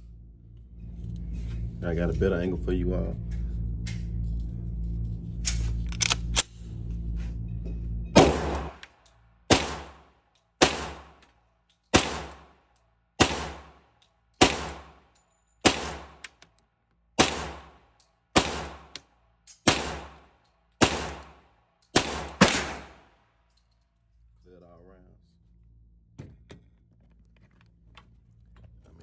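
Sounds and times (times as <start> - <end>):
pistol shots with ringing echo: 8.2 - 8.8, 9.5 - 11.2, 11.9 - 12.6, 13.2 - 13.8, 14.4 - 16.2, 17.2 - 19.0, 19.6 - 23.2.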